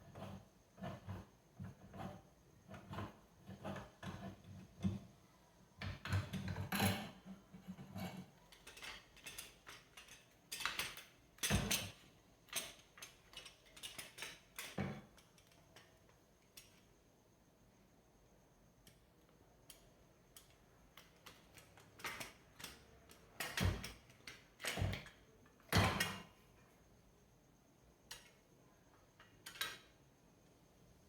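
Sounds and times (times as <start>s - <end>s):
metal tools clinking and knocking: 6.0s - 16.8s, 29.2s - 30.0s.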